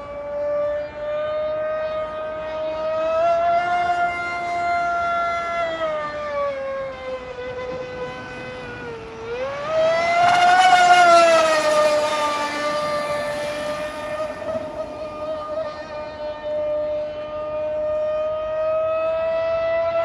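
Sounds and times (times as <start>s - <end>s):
toy boat motor whining: 10.3s - 16.2s.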